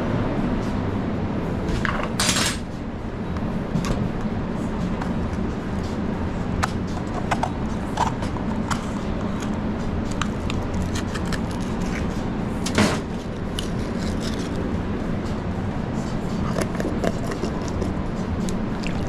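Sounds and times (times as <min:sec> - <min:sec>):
low background hum: 0:00.0 - 0:19.0
kitchen utensils clinking: 0:02.1 - 0:02.7, 0:12.7 - 0:13.1.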